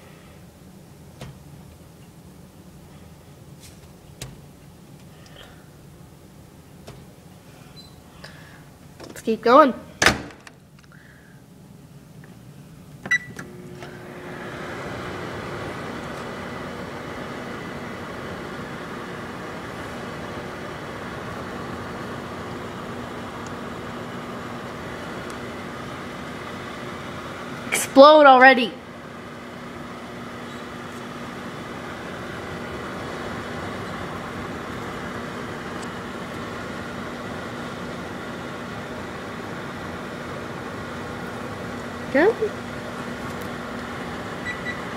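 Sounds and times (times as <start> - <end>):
microwave humming: 0.0 - 44.9
microwave beep: 13.1 - 13.5, 44.4 - 44.9.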